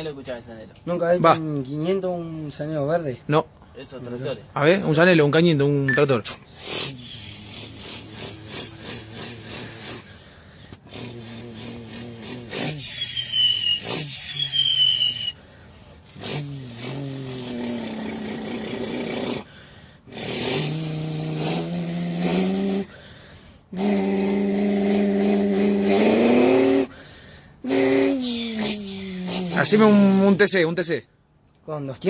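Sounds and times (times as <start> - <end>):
person imitating tractor engine: 6.5 - 10.2, 10.8 - 15.3, 16.2 - 19.5, 20.1 - 22.9, 23.7 - 26.9, 27.6 - 30.4.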